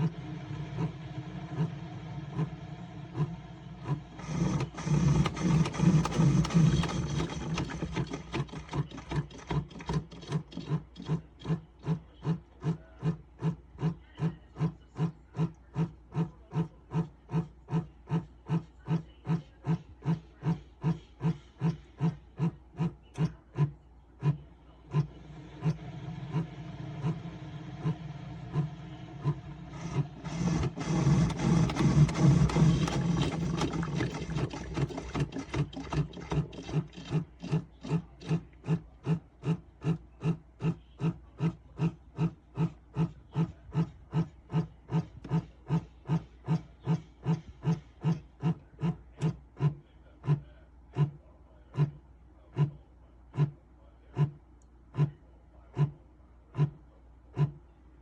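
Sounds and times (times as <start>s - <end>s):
coffee brewer hissing gush: 0.0s - 12.0s, 24.9s - 39.6s
coffee brewer pulsing clicks: 0.0s - 50.4s.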